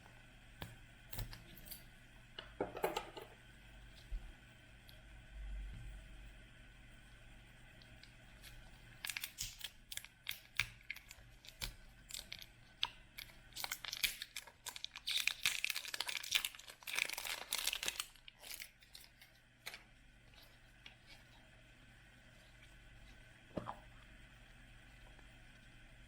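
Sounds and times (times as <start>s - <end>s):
toy wrapping crinkling and tearing: 8.4s - 19.8s.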